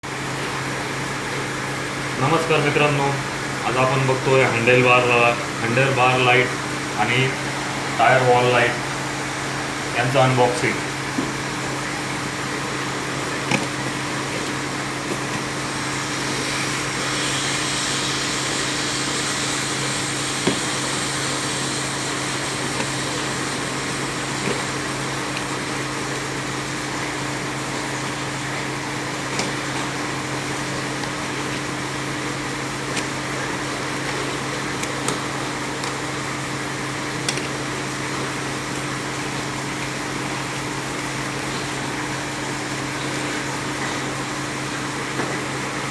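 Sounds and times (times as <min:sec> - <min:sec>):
mechanical whir with low hum: 0:00.1 - 0:45.9.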